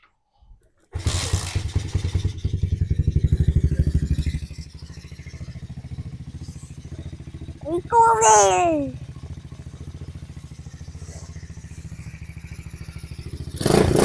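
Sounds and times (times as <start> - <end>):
dirt bike engine starting and idling: 1.0 - 4.4.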